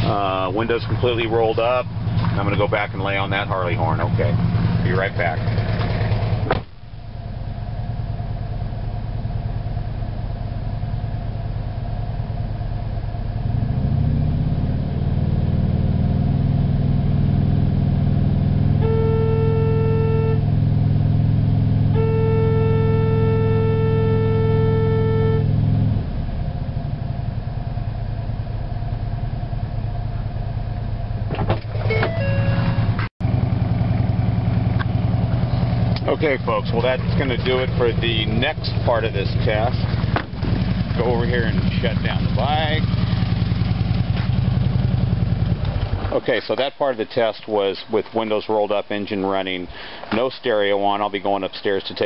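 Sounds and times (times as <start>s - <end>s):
motorcycle engine revving: 0.0s - 6.7s, 28.8s - 46.3s
car engine idling: 0.0s - 15.5s, 16.3s - 47.1s
motorcycle horn blasts: 18.8s - 20.5s, 21.9s - 25.5s.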